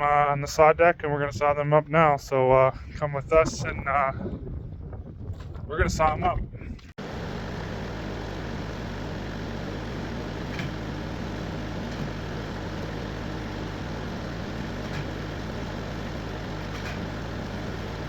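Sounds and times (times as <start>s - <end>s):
engine running steadily: 7.0s - 18.0s.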